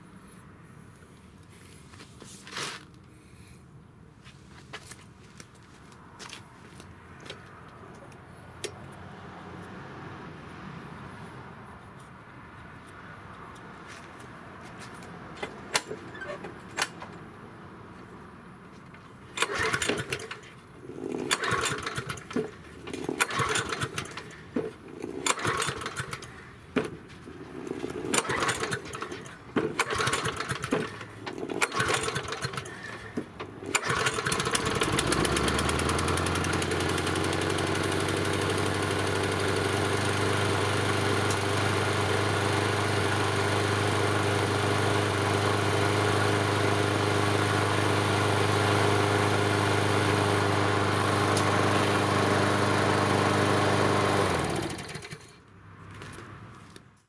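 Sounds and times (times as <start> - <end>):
lawn mower engine cranking and running: 14.8 - 17.4, 18.0 - 56.8.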